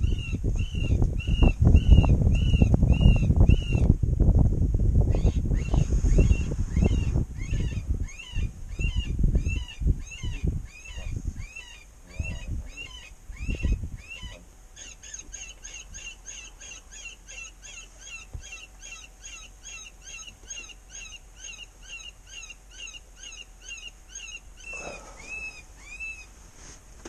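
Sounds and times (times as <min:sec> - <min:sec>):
predator call squealing: 0:05.1 - 0:26.3.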